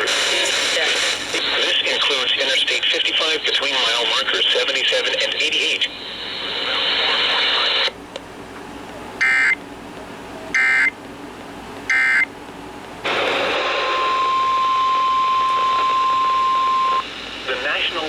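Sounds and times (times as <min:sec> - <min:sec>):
radio hiss: 0:00.0 - 0:08.0, 0:13.0 - 0:18.0
steady warning alarm tone: 0:09.2 - 0:09.6, 0:10.6 - 0:11.0, 0:11.9 - 0:12.3, 0:13.2 - 0:18.0.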